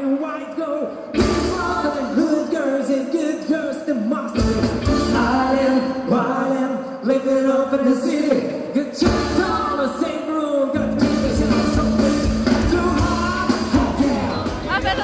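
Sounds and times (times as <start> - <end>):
pop-rock song with singing: 0.0 - 15.0
heavy bass and drums: 1.2 - 1.9, 10.8 - 15.0.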